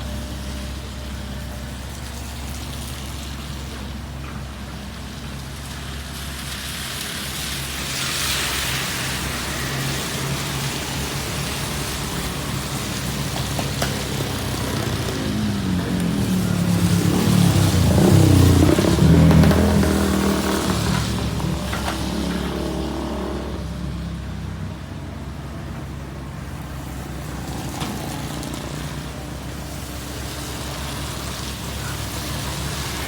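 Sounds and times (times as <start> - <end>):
diesel engine running: 0.0 - 33.0
rushing hiss: 27.0 - 33.0.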